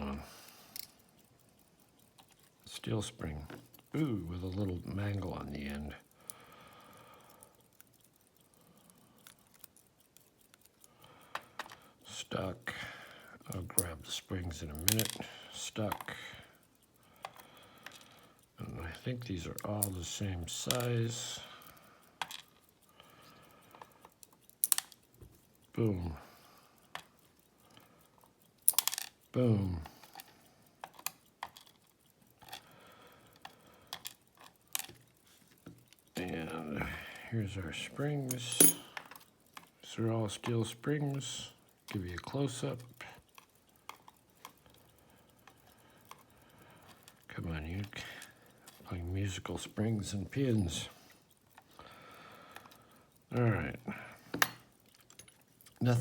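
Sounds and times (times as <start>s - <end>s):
small metal pins clicking: 0.0s - 56.0s
metal parts tapping on metal: 13.5s - 16.1s, 17.2s - 22.7s, 23.3s - 25.9s, 28.6s - 29.4s, 33.4s - 37.0s, 37.6s - 50.9s, 52.6s - 56.0s.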